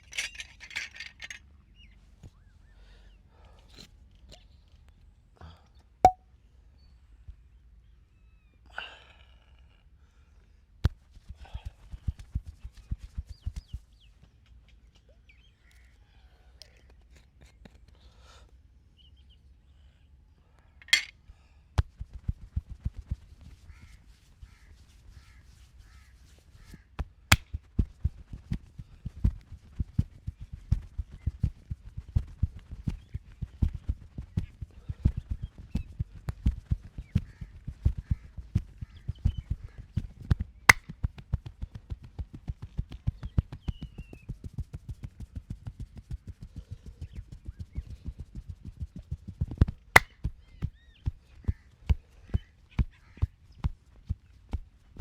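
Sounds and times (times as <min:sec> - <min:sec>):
quick low hand pats: 0:10.8 - 0:13.9, 0:27.3 - 0:46.5.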